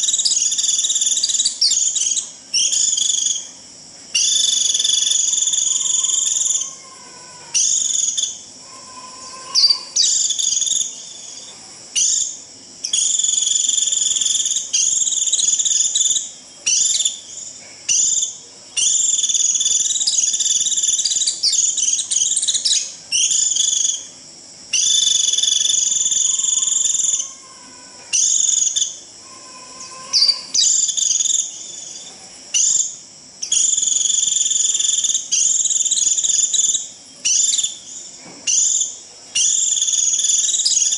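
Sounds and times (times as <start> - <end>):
bird giving shrill buzzy calls: 4.2 - 11.0, 24.8 - 31.5.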